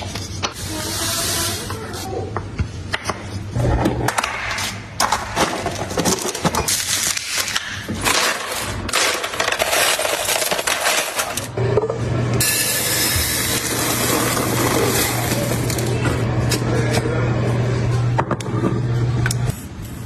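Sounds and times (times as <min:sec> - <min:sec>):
hard objects clattering and clinking: 0:04.0 - 0:11.9.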